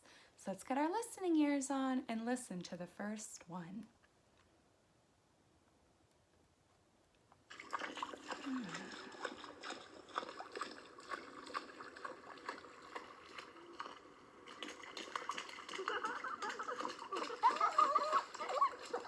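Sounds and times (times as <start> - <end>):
splashing footsteps in water: 7.5 - 19.0.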